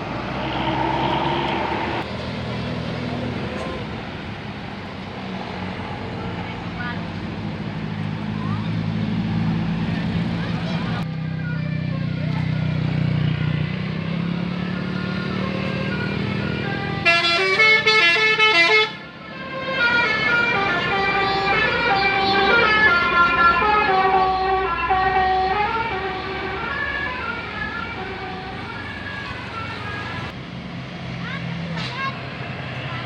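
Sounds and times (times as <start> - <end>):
bus engine humming: 0.0 - 33.0
bus horn playing a melody: 15.2 - 30.3.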